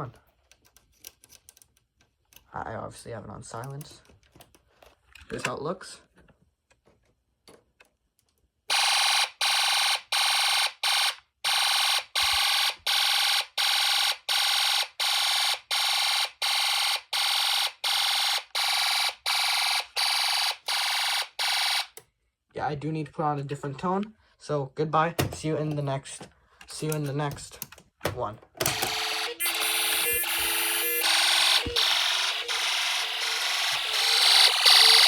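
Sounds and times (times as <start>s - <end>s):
buzzy electronic alarm tone: 28.8s - 35.0s.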